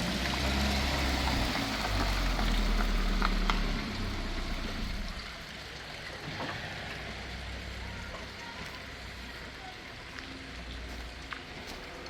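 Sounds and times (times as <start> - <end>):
low engine rumble: 0.0 - 5.9.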